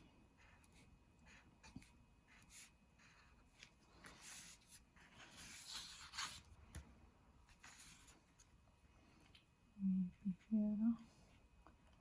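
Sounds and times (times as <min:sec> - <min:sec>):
drawing tool scratching paper: 0:00.4 - 0:06.5.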